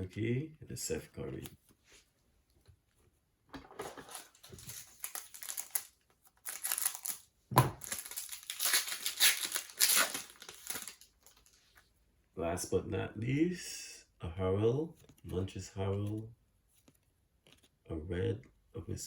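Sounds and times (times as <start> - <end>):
foil wrapper crinkling: 4.1 - 11.6.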